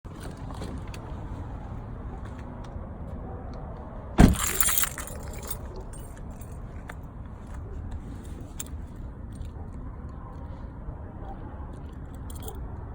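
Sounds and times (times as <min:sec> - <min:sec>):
car rumbling: 0:00.1 - 0:12.9
loud sudden rattle: 0:04.2 - 0:05.6.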